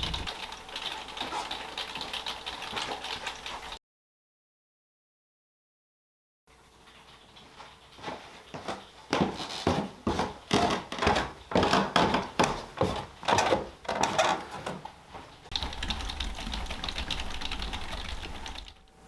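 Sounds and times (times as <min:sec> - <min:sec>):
rattling noise: 0:00.0 - 0:00.4.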